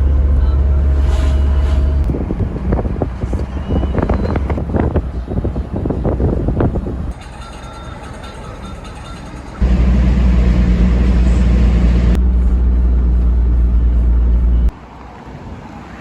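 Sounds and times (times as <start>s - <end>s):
low engine rumble with hum: 0.0s - 7.1s, 9.4s - 14.8s.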